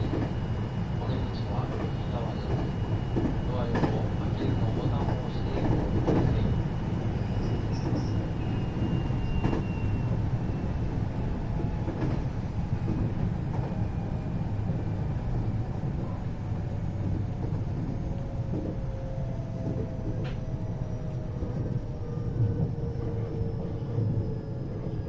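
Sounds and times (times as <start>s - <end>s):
train wheels and motors rumbling: 0.0s - 25.0s.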